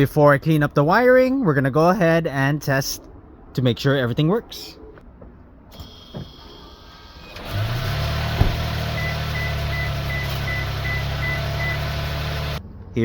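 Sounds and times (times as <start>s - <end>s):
car engine running: 7.4s - 12.6s
high dashboard chime: 8.8s - 12.0s.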